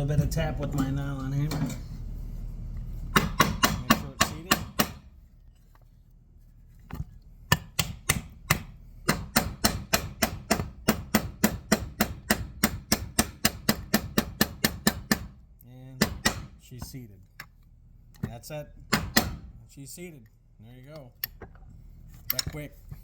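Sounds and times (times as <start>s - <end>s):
nylon hammer tapping metal: 3.1s - 5.1s, 7.5s - 15.3s, 16.0s - 17.0s.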